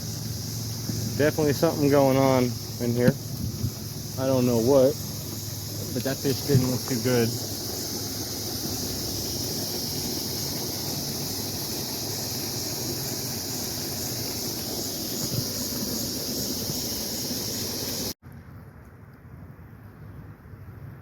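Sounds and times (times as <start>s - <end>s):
creek rushing: 0.0s - 18.1s
insect drone: 0.0s - 18.2s.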